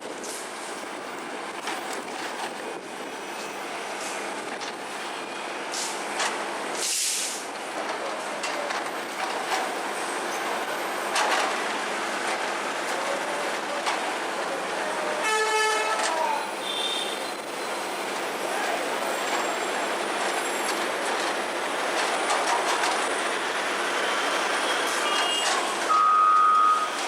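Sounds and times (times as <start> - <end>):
short hiss: 6.8 - 7.4
horn-like tone: 15.2 - 17.2, 25.0 - 27.0.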